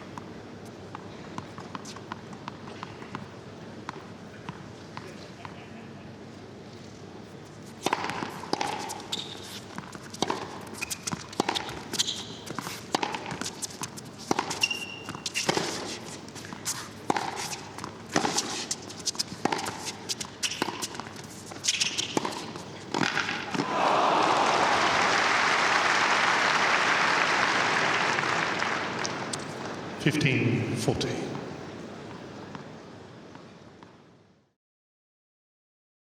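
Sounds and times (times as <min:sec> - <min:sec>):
ball bouncing on court: 0:07.8 - 0:15.7, 0:19.0 - 0:21.1
rackets striking tennis ball: 0:07.8 - 0:23.8
crowd applause: 0:23.6 - 0:29.3.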